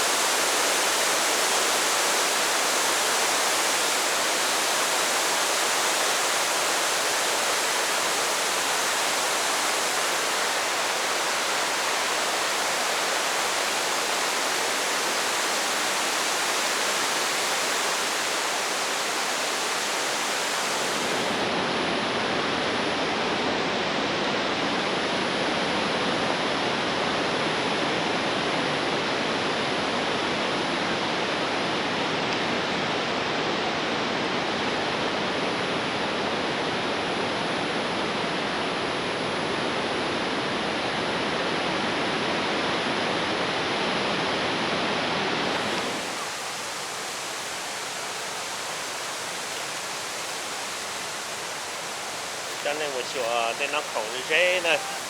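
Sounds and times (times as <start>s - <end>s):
waterfall rushing: 0.0s - 21.5s, 45.4s - 55.0s.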